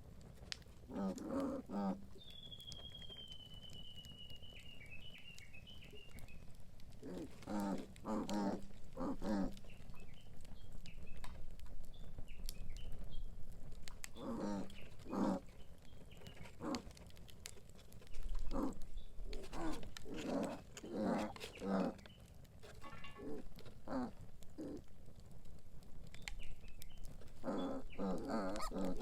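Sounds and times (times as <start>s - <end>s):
pigs grunting and squealing: 0.9s - 2.1s, 7.0s - 9.6s, 14.2s - 15.4s, 16.6s - 16.8s, 18.5s - 22.0s, 23.1s - 24.8s, 27.4s - 29.0s.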